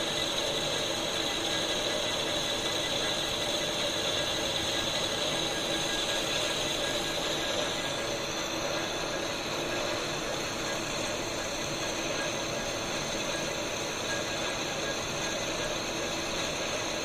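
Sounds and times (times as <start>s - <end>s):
lathe cutting metal: 0.0s - 17.0s
steady machine tones: 0.0s - 17.0s.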